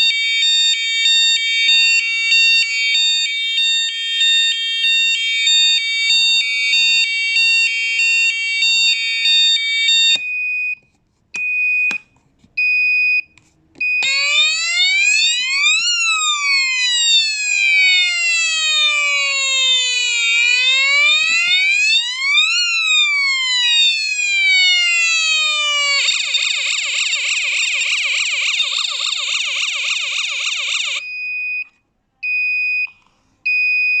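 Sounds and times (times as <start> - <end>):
fast warbling siren: 0.0 - 10.2, 14.0 - 31.0
wailing siren: 0.0 - 10.2, 14.0 - 31.0.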